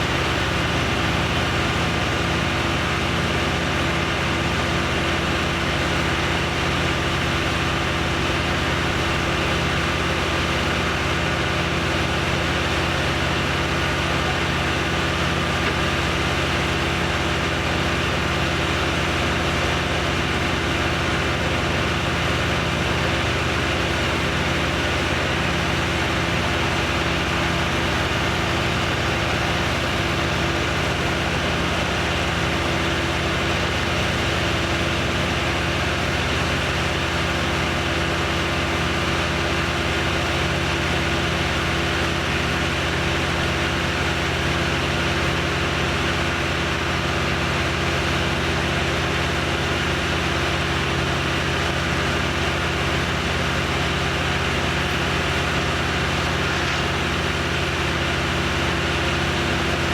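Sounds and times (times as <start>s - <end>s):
engine idling: 0.0s - 59.9s.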